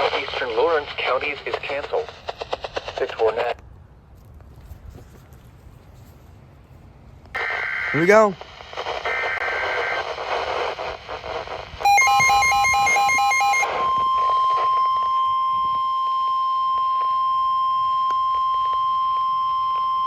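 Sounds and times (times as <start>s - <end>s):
radio hiss: 0.0s - 3.6s, 7.3s - 15.1s
warbling digital header tones: 11.8s - 15.1s
steady warning alarm tone: 11.8s - 20.0s.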